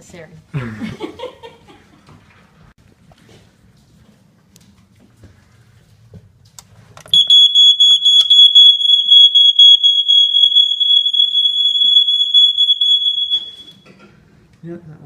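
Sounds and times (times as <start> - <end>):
smoke alarm high-pitched tone: 7.2 - 13.8.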